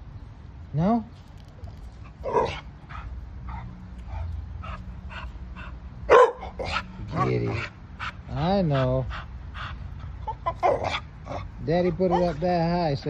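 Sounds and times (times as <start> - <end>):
puppy crying: 2.2 - 5.3, 9.6 - 12.4.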